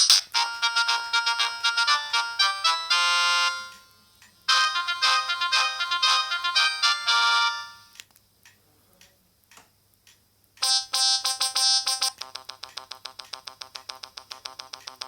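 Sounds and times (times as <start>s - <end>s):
phone ringtone melody: 0.3s - 8.0s, 10.6s - 15.0s
faint clicks: 8.0s - 10.6s.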